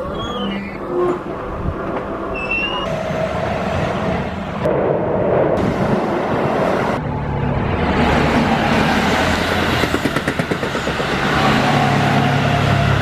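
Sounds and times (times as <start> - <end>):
electric train running past: 2.9 - 13.0.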